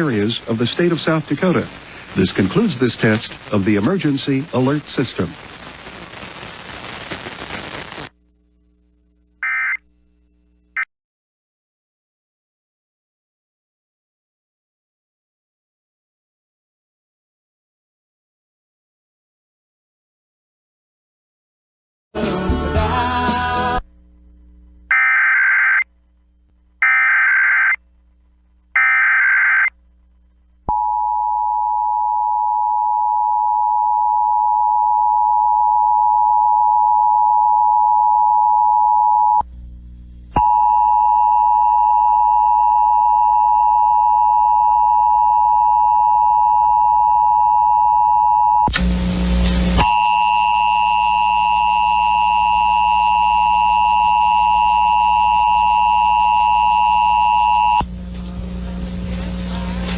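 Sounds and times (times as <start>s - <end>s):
burst of noise: 4.5s - 8.1s.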